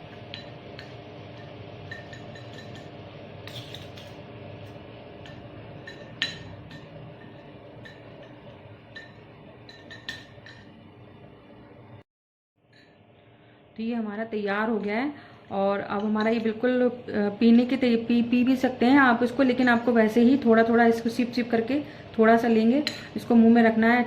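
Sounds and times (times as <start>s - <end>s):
spoon clinking against container: 0.2s - 4.2s.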